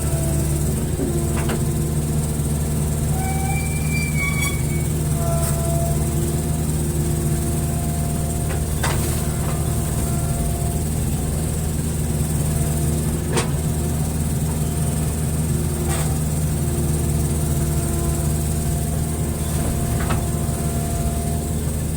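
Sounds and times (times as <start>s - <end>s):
diesel engine running: 0.0s - 21.9s
hydraulic whine: 0.0s - 21.9s.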